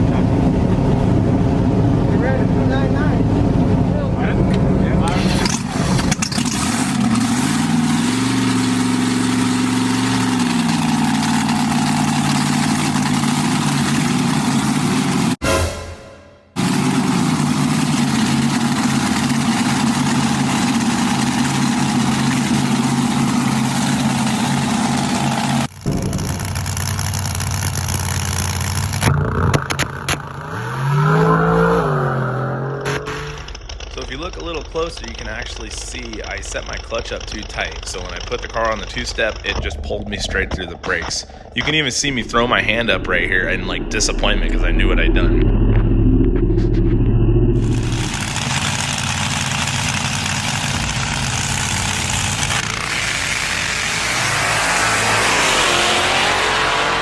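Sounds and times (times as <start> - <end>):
race car engine running: 0.0 - 15.4, 16.6 - 57.0
sharp engine cracks: 25.7 - 30.4, 32.8 - 47.0, 47.6 - 54.2.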